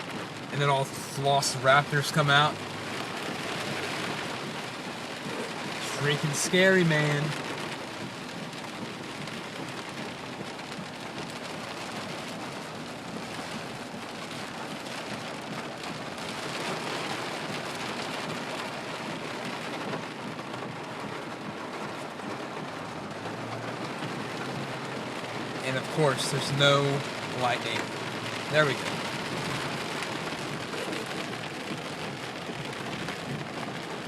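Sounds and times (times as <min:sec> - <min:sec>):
heavy rain pouring: 0:00.0 - 0:34.0.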